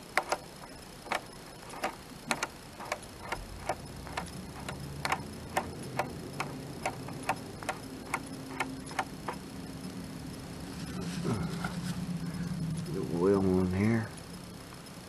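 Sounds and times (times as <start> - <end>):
ratchet gear clicking: 0.0 - 10.0.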